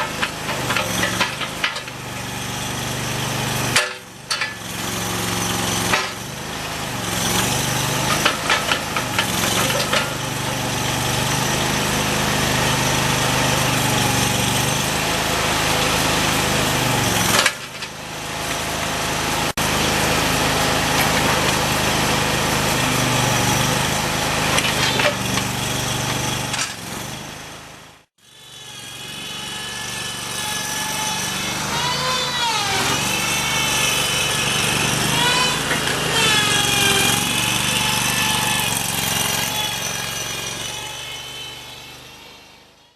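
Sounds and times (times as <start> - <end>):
backhoe engine running: 0.0 - 28.1, 31.2 - 40.6
hydraulic whine: 28.7 - 42.9.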